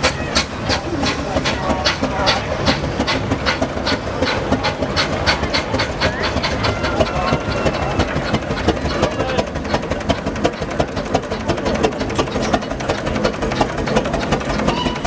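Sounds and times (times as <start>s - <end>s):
engine knocking: 0.0s - 15.0s.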